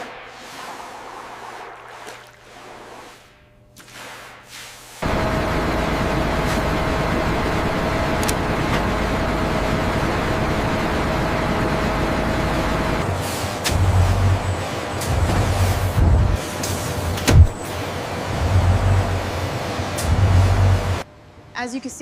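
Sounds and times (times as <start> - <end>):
industrial machinery hum: 5.0 - 21.5.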